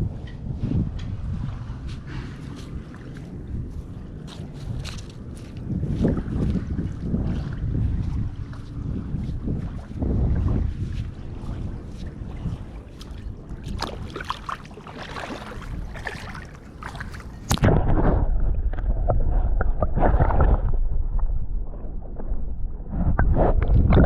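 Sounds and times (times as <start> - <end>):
heavy low rumble: 0.0 - 24.0
water sloshing and gurgling: 0.0 - 24.0
small clicks and splashes: 2.5 - 6.6, 12.4 - 17.7.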